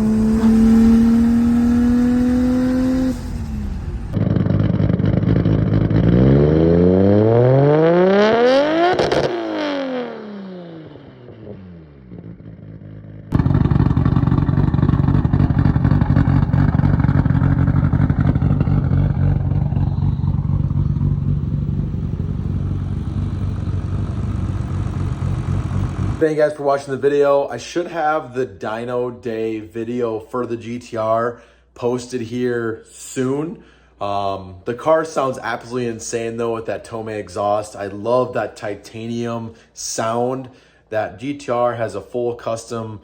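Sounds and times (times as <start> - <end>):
car engine revving: 0.0 - 26.2.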